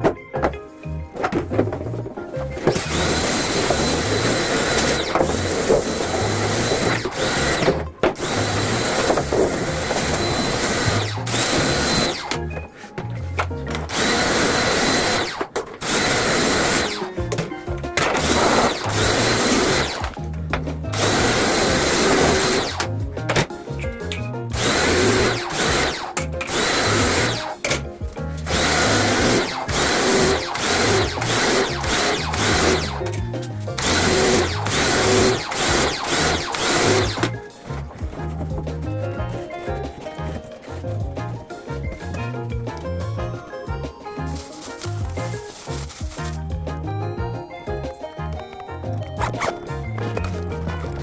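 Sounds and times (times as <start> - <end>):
background music with low beat: 0.0 - 51.0
power drill running in bursts: 2.6 - 12.5, 13.8 - 17.3, 18.1 - 20.2, 20.9 - 22.9, 24.5 - 27.8, 28.4 - 37.4.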